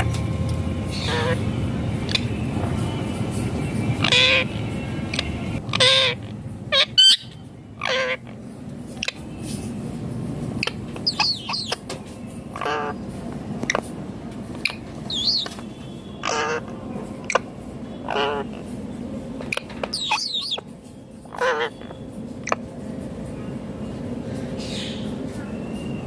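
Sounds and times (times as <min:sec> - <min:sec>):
low background hum: 0:00.0 - 0:26.0
parakeet harsh calls: 0:00.9 - 0:02.4, 0:03.8 - 0:08.4, 0:09.0 - 0:09.3, 0:10.6 - 0:11.8, 0:12.5 - 0:13.0, 0:14.6 - 0:18.7, 0:19.4 - 0:20.6, 0:21.2 - 0:22.7.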